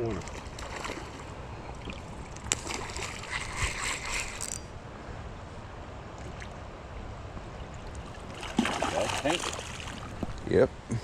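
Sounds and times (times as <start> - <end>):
creek water running: 0.0 - 4.6, 6.0 - 10.7
water splashes: 0.0 - 4.6, 7.6 - 10.5.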